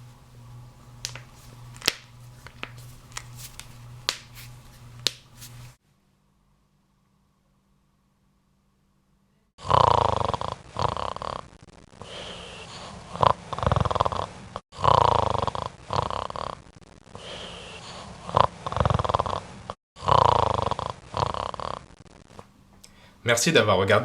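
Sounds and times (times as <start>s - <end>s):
loud snoring: 9.6s - 21.9s.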